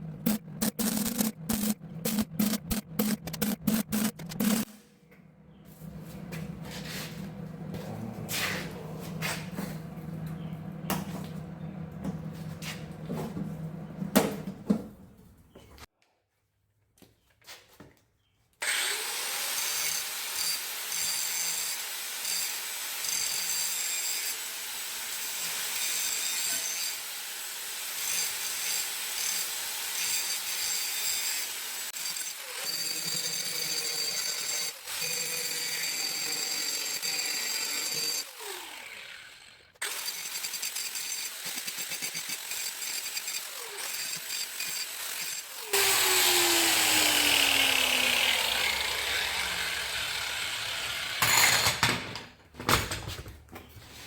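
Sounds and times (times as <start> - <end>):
angle grinder grinding steel: 18.6 - 51.8.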